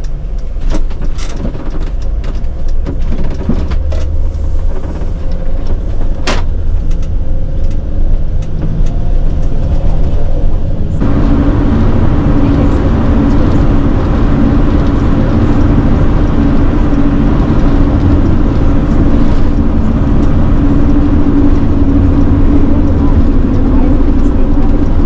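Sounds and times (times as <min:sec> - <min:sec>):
rattles and clicks: 0:00.0 - 0:25.0
van engine and road rumble: 0:00.0 - 0:25.0
steady hum: 0:11.0 - 0:25.0.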